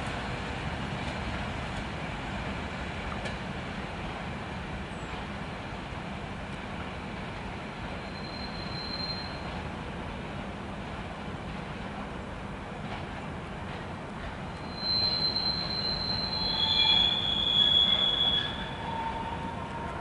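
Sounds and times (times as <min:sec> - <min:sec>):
freight train rumbling: 0:00.0 - 0:20.0
train wheels squealing: 0:07.9 - 0:09.6, 0:14.5 - 0:20.0.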